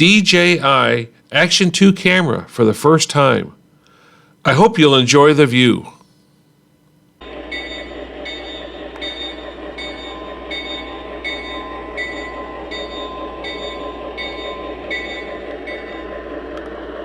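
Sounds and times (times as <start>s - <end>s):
model train wheels rolling on track: 7.2s - 17.0s.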